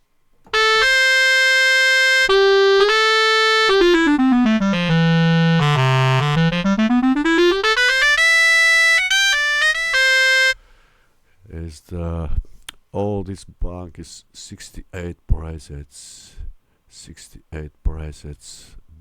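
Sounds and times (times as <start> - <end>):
sampled clarinet notes: 0.5 - 10.6.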